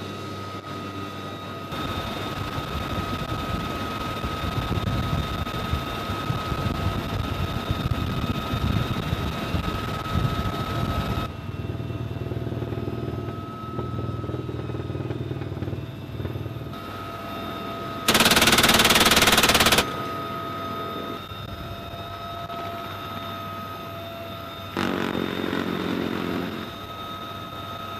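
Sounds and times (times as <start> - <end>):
helicopter engine and rotor: 0.0 - 27.9
rapid machine-gun fire: 18.1 - 20.0.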